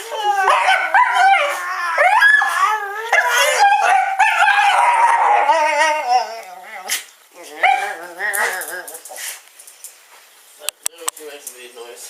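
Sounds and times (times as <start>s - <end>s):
dog howling and whining: 0.0s - 9.4s.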